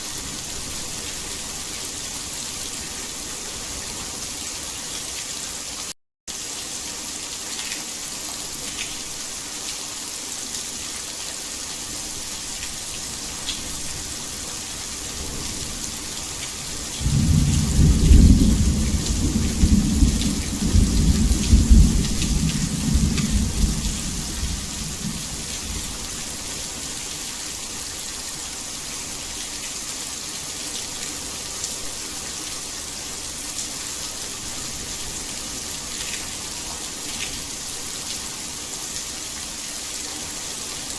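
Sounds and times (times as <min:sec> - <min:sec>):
heavy rain hissing: 0:09.1 - 0:29.4
thunder rumbling: 0:17.0 - 0:26.1.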